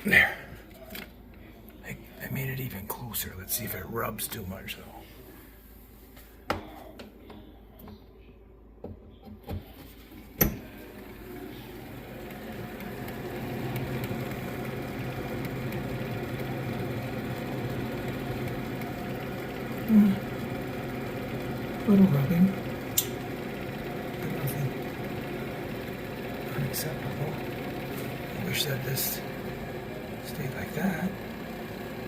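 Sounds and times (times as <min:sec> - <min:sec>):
fan motor humming: 0:00.0 - 0:32.0.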